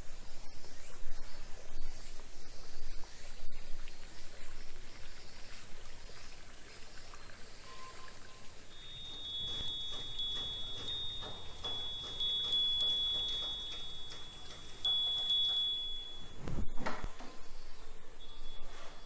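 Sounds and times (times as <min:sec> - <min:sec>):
wind chime ringing: 0:07.7 - 0:16.6, 0:18.1 - 0:19.0.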